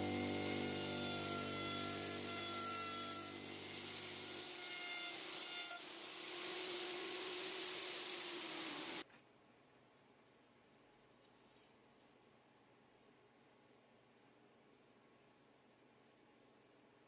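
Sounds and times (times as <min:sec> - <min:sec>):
router cutting wood: 0:00.0 - 0:09.0
router motor whine: 0:00.0 - 0:09.0.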